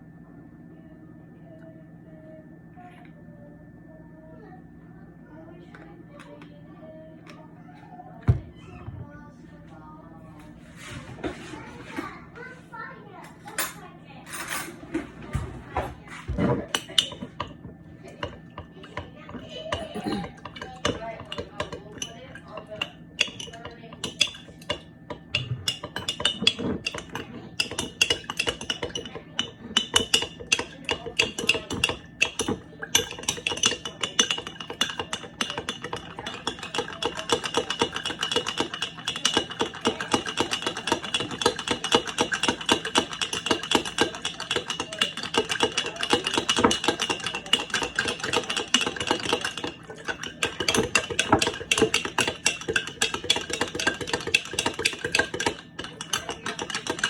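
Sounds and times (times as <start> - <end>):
utensils clinking against a dish: 13.2 - 57.0.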